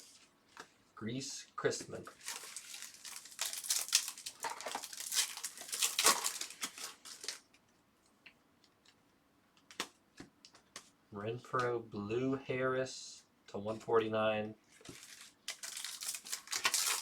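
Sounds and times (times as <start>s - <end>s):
wrapper crinkling and tearing: 2.1s - 7.4s, 14.8s - 17.0s.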